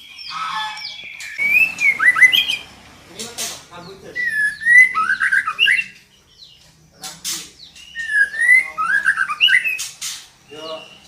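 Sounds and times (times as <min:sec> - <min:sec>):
bird whistled call: 0:00.0 - 0:02.7, 0:04.1 - 0:06.0, 0:07.8 - 0:11.0
harsh raspy bird note: 0:00.0 - 0:06.0.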